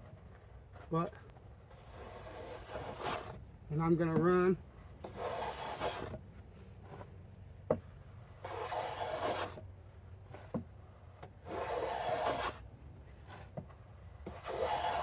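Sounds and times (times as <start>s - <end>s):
hand plane shaving wood: 1.8s - 3.4s, 5.0s - 6.2s, 8.4s - 9.6s, 11.2s - 13.6s, 14.2s - 15.0s.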